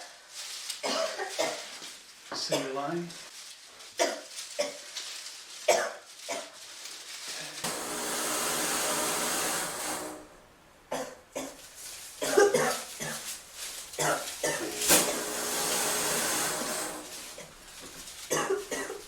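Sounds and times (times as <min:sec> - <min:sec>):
woman coughing: 0:00.8 - 0:01.6, 0:04.0 - 0:04.8, 0:05.7 - 0:06.5, 0:10.9 - 0:11.6, 0:12.2 - 0:13.3, 0:14.0 - 0:15.2, 0:18.3 - 0:19.0
fog machine hissing: 0:07.6 - 0:10.5, 0:13.1 - 0:19.0.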